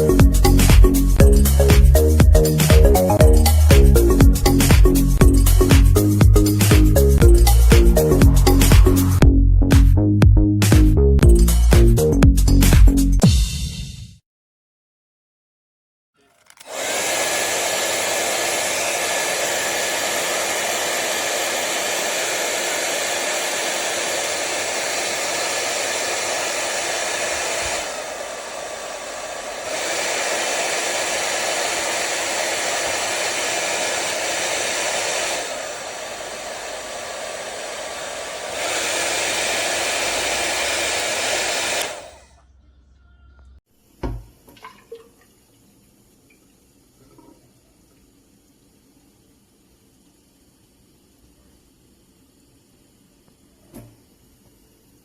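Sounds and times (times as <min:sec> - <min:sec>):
hair dryer blowing whine: 0:00.0 - 0:09.8, 0:16.6 - 0:42.4.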